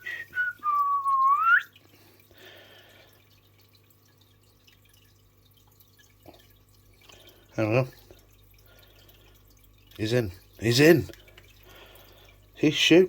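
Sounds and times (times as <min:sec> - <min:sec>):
person whistling a tune: 0:00.0 - 0:01.7.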